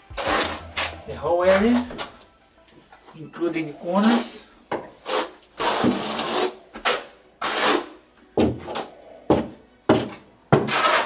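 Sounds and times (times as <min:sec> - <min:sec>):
trowel scraping mortar: 0:00.1 - 0:02.0, 0:04.0 - 0:08.0, 0:10.5 - 0:11.0.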